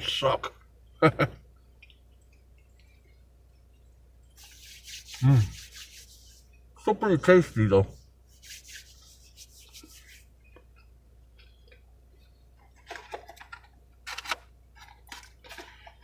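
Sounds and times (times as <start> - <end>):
food rustling in hand: 4.4 - 6.4.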